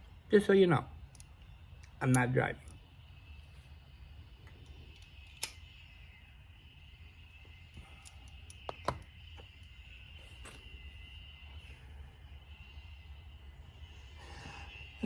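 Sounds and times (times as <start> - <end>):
low hum: 0.0 - 15.0
sharp clicks: 4.9 - 5.6.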